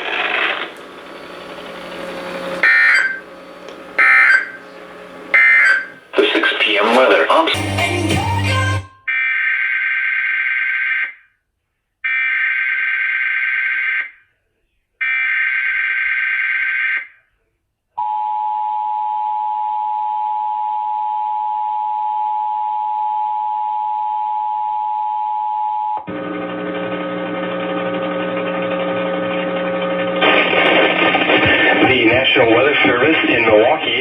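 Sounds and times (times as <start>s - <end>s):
low hum: 0.2s - 6.9s
steady attention tone: 0.3s - 7.8s
warbling data tones: 0.4s - 7.3s.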